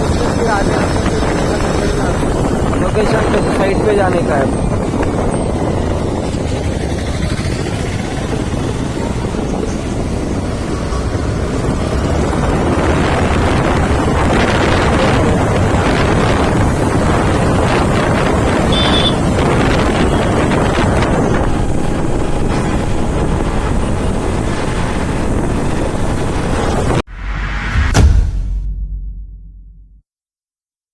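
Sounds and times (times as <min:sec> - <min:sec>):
vehicle running noise: 0:00.0 - 0:27.0
wind buffeting microphone: 0:00.0 - 0:27.0.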